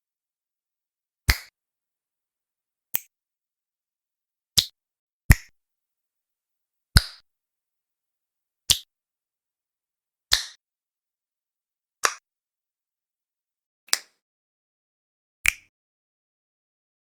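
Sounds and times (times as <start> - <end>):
finger snaps: 1.2 - 1.6, 2.9 - 3.1, 4.6 - 5.5, 7.0 - 7.2, 8.7 - 8.9, 10.3 - 10.6, 12.0 - 12.3, 13.9 - 14.2, 15.4 - 15.7.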